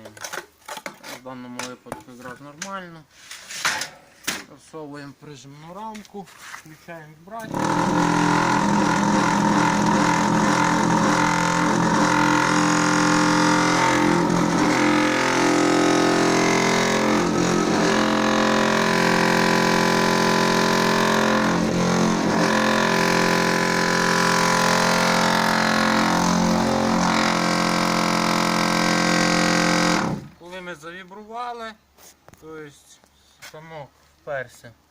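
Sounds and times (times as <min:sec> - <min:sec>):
block machine vibrator humming: 0:07.5 - 0:30.3.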